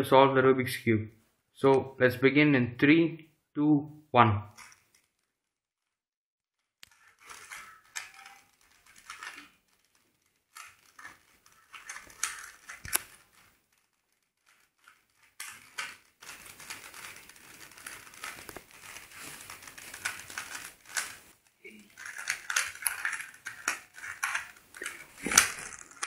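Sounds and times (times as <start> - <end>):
puzzle cube clicking and rattling: 4.6 - 5.3, 6.8 - 26.0.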